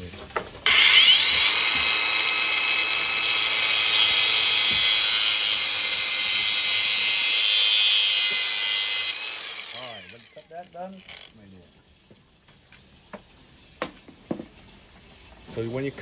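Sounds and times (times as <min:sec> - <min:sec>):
angle grinder cutting hose: 0:00.6 - 0:11.4.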